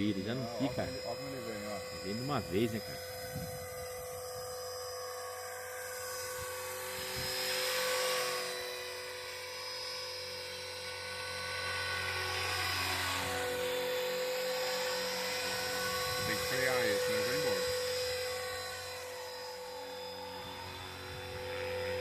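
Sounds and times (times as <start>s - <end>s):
model helicopter high whine: 0.0s - 22.0s
rush of wind noise: 2.0s - 4.0s, 7.0s - 7.4s, 15.8s - 17.5s.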